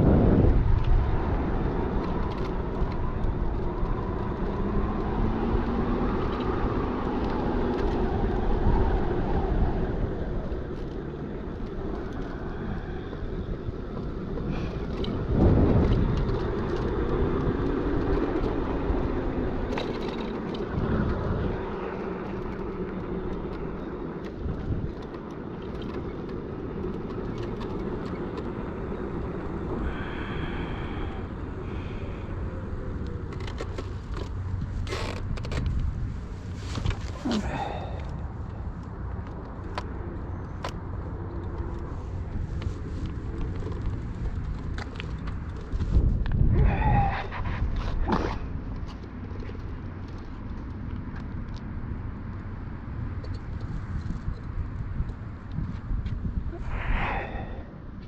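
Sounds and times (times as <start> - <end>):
wind rushing: 0.0 - 1.8, 45.8 - 48.5, 56.2 - 57.8
road rumble: 0.0 - 58.0.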